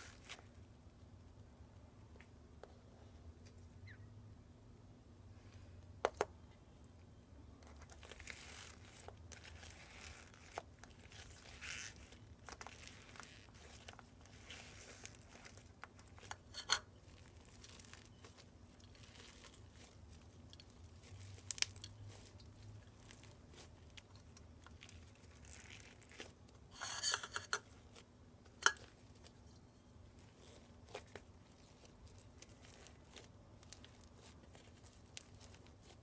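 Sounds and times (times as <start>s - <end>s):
crunchy slime crackling: 0.0s - 0.7s, 7.5s - 26.8s, 27.6s - 36.0s.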